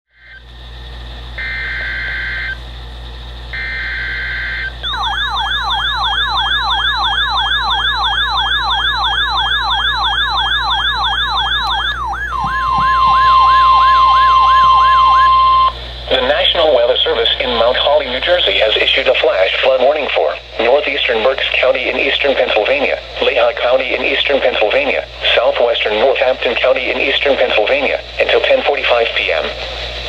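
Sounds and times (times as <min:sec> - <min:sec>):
steady warning alarm tone: 0:00.1 - 0:29.0
rapid sweeping siren: 0:01.4 - 0:02.6, 0:03.5 - 0:15.8.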